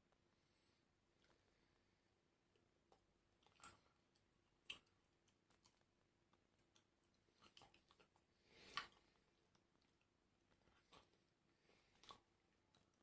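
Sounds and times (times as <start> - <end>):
chewing sounds: 2.8 - 13.0.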